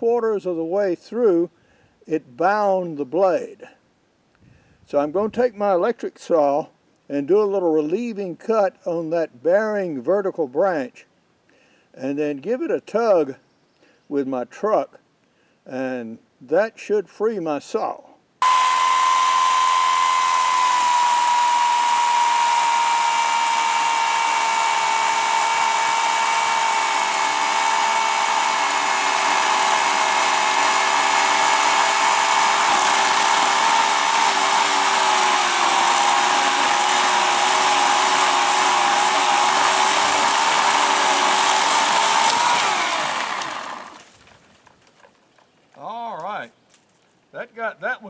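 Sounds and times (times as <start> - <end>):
electric chainsaw cutting wood: 18.4 - 44.2.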